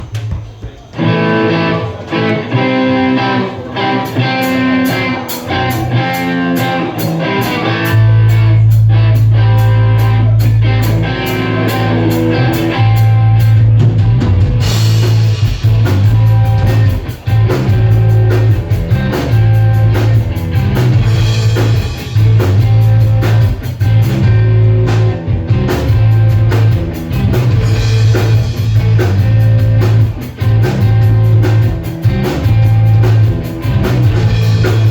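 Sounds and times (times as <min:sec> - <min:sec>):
drum kit beat: 0:00.0 - 0:34.9
electric guitar chords: 0:00.9 - 0:34.9
deep bass line: 0:05.9 - 0:34.9.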